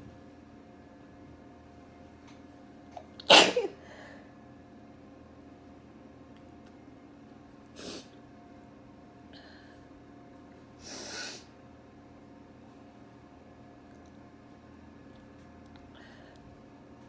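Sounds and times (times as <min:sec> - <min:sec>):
person sniffing: 0:07.8 - 0:08.1, 0:10.8 - 0:11.5.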